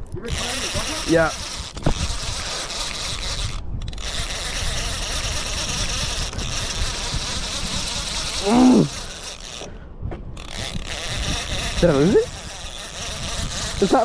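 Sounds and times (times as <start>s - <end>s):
fishing reel drag buzzing: 0.0s - 14.0s
person exclaiming: 8.4s - 9.0s.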